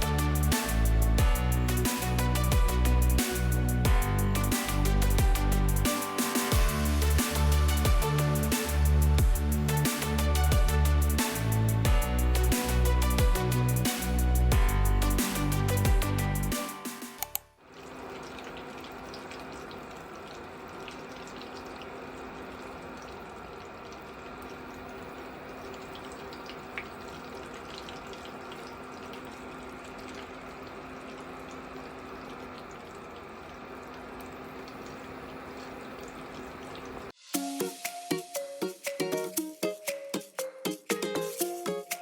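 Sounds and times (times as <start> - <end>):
running water: 17.7 - 40.0.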